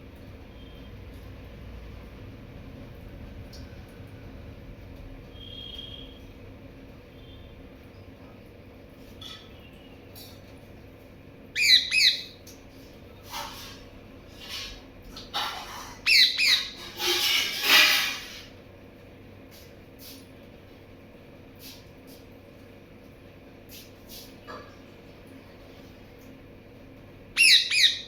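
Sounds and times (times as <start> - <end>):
parrot rasping squawks: 11.6 - 12.3, 16.0 - 18.4, 27.4 - 28.0
parrot shrill screeches: 11.6 - 12.3, 16.0 - 18.4, 27.4 - 28.0.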